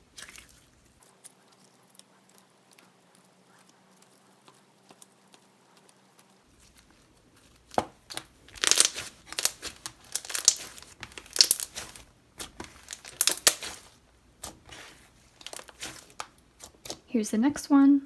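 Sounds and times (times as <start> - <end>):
slime crackling and tearing: 7.6 - 17.0.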